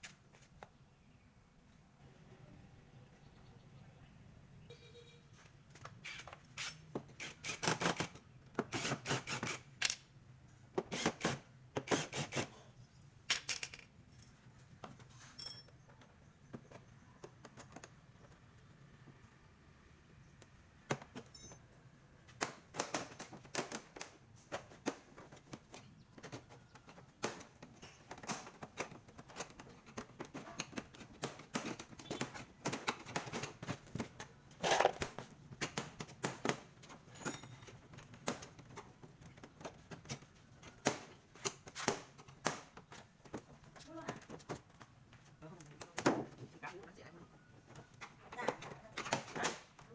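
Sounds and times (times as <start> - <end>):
small tools clicking and rattling: 5.7 - 10.1, 13.3 - 16.1, 22.3 - 44.9.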